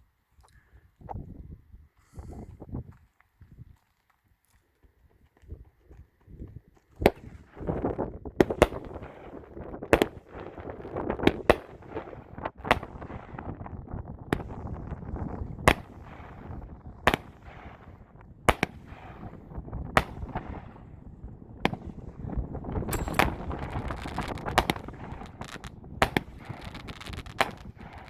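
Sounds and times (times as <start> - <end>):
firework cake shots: 7.0 - 13.1, 14.3 - 28.0
firework crackling: 7.0 - 28.0.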